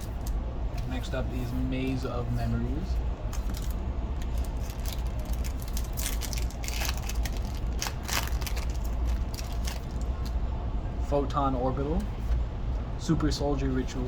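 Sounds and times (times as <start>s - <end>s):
low steady hum: 0.0s - 14.0s
foil pack tearing and crinkling: 3.3s - 10.3s.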